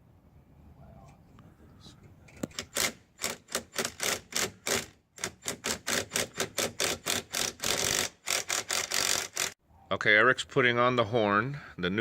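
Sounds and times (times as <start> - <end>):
ratchet wrench clicking: 2.4 - 9.6.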